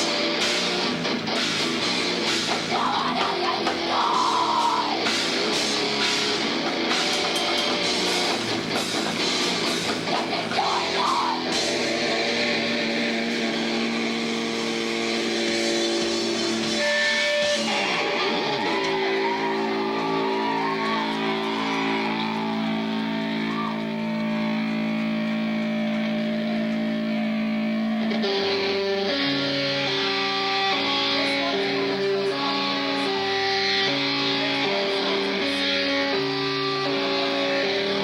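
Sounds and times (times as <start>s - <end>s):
drum kit: 0.0s - 22.8s
distorted electric guitars: 0.0s - 38.0s.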